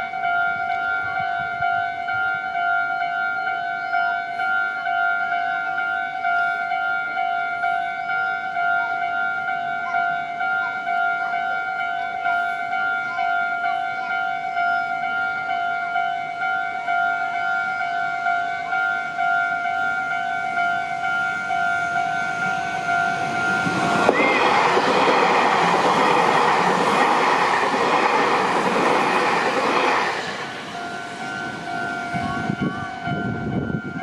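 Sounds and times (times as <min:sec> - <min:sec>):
level crossing bell ringing: 0:00.0 - 0:34.0
train rumbling past: 0:14.9 - 0:34.0.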